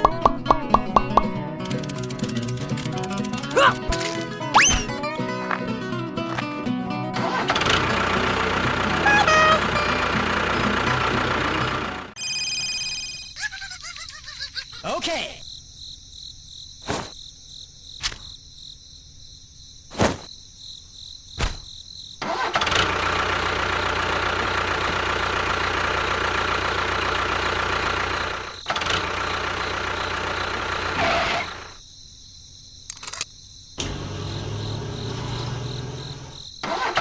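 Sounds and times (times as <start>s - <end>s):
sharp clicks: 0.0s - 5.0s
motor running: 7.3s - 12.1s, 33.8s - 36.4s
crickets chirping: 12.8s - 22.5s, 23.5s - 28.8s, 29.4s - 37.0s.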